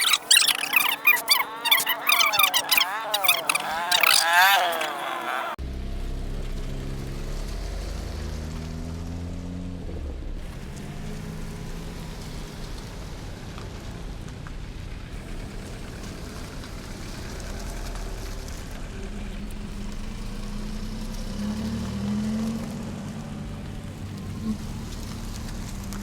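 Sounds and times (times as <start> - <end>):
steady hiss of rain or tyres: 10.4 - 26.0.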